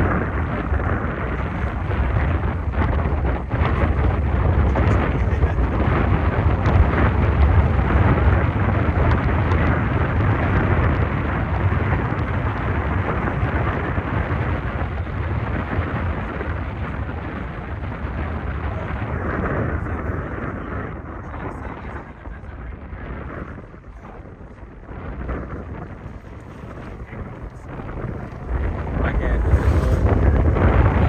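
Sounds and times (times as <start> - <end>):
thunder rumbling: 25.5 - 31.0.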